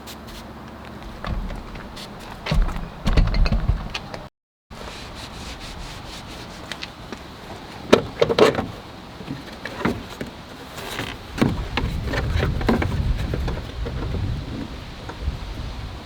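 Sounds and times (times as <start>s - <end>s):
knocks and clicks of parts and tools: 1.0s - 4.3s.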